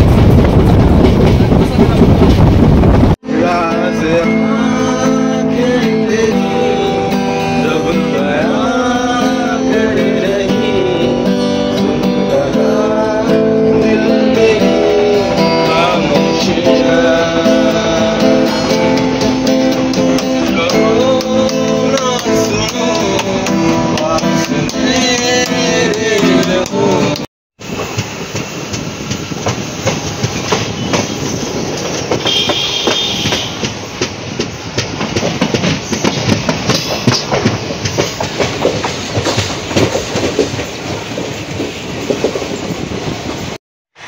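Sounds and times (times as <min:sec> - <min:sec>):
guitar background music: 0:03.3 - 0:27.2.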